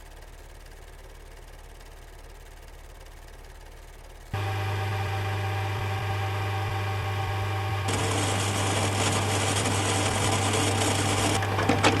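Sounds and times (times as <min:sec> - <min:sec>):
electrical hum: 0:04.3 - 0:12.0
faint high whine: 0:04.4 - 0:12.0
loud static hiss: 0:07.9 - 0:12.0.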